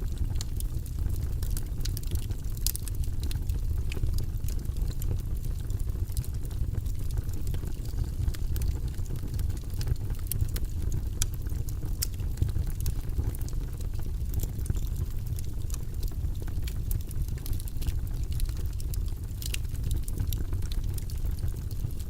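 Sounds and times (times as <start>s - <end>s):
fire crackling and popping: 0.0s - 22.0s
low rumble of burning wood: 0.0s - 22.0s.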